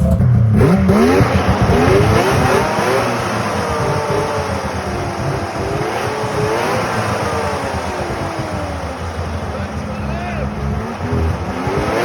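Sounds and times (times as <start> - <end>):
snowmobile engine revving: 0.0 - 12.0.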